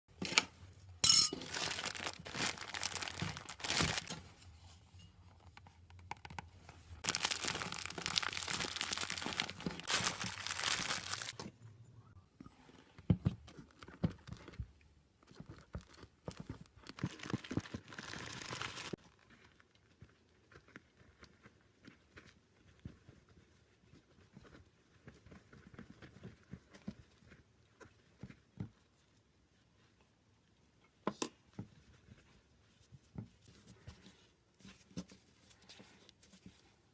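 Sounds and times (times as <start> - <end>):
slime crackling and crinkling: 1.3 - 4.2, 6.2 - 11.4, 13.4 - 28.3.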